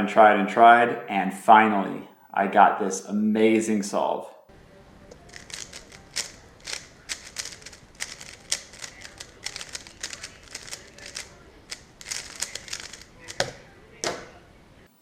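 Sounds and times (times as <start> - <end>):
puzzle cube plastic clicks: 5.1 - 13.6.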